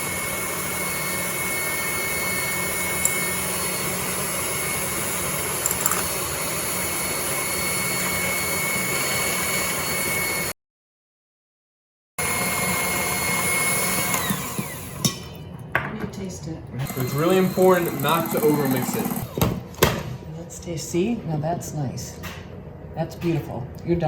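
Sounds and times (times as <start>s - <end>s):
electric mixer motor whine: 0.0s - 10.5s, 12.2s - 15.1s, 16.8s - 19.6s.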